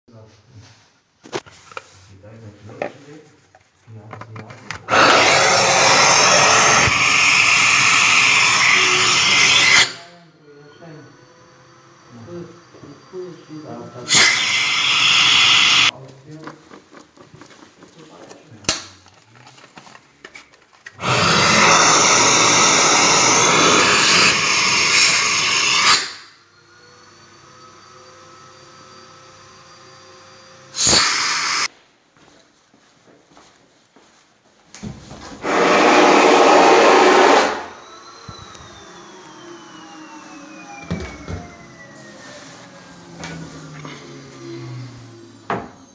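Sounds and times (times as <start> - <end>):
vacuum suction air rushing: 4.8 - 10.1, 14.0 - 15.9, 21.0 - 26.2, 30.7 - 31.7, 35.4 - 45.2
vacuum system rush of air: 4.9 - 9.9
steady hum with whining tones: 36.9 - 45.9.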